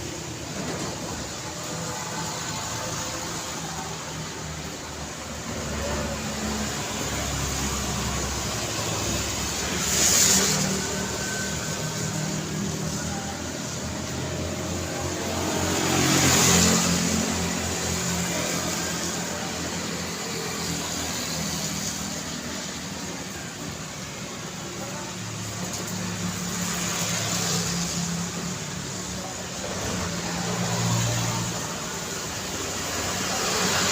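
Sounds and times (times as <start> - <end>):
road traffic hum: 0.0 - 33.9
vehicles passing close: 0.0 - 33.9.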